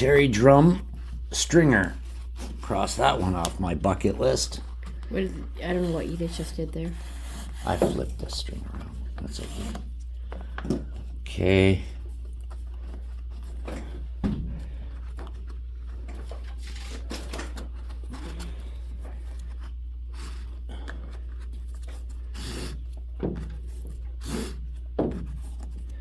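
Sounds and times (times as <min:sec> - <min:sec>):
rope scraping against wooden hoops: 0:00.0 - 0:10.1
steady low hum: 0:00.0 - 0:26.0.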